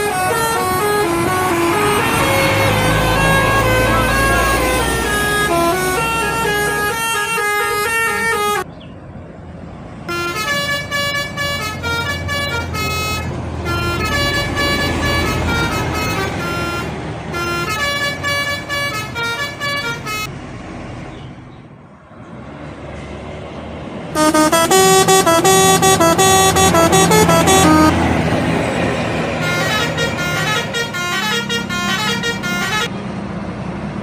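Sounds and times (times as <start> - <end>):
multi-tone air horn melodies: 0.0 - 8.7, 10.1 - 20.3, 24.2 - 28.3, 29.2 - 32.9
bus engine running: 0.0 - 34.0.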